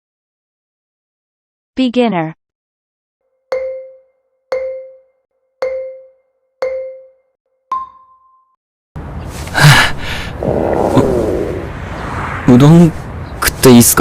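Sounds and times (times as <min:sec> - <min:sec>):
quiz countdown chime: 0:03.5 - 0:08.2.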